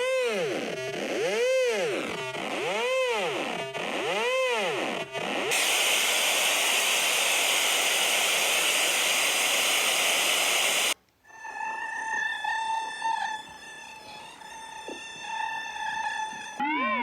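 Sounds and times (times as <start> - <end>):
synthesized hiss: 5.1 - 11.8.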